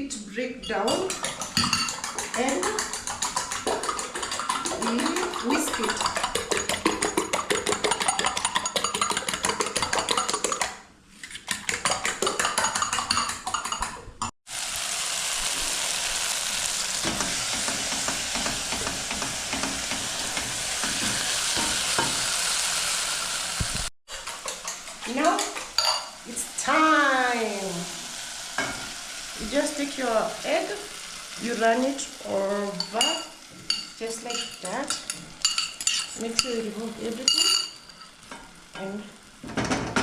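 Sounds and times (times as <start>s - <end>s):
eggs sizzling in hot oil: 0.9s - 10.8s, 11.5s - 40.0s
eggs whisked in a bowl: 1.0s - 14.1s, 24.1s - 27.4s, 32.8s - 38.3s.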